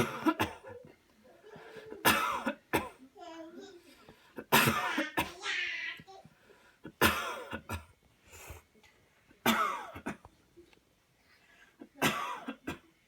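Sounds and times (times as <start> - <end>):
person coughing hard: 0.0 - 0.8, 2.0 - 3.0, 4.4 - 5.4, 6.9 - 7.9, 9.5 - 10.2, 12.0 - 12.8.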